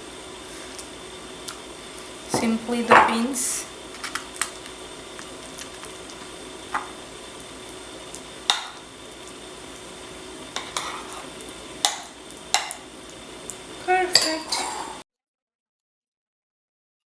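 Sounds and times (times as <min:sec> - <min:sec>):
spoon clicks and taps: 0:08.1 - 0:08.8, 0:11.8 - 0:12.8
spoon scraping in bowl: 0:10.5 - 0:12.8, 0:14.1 - 0:15.0.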